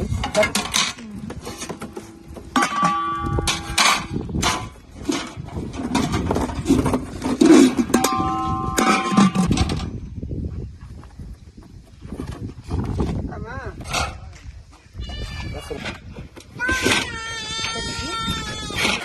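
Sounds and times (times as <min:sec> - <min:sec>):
metal pots and utensils clanking: 0:00.1 - 0:01.0, 0:01.6 - 0:09.9.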